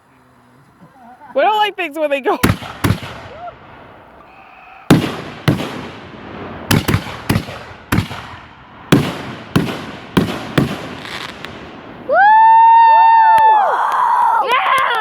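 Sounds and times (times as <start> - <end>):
fireworks bangs echoing: 2.4 - 12.6.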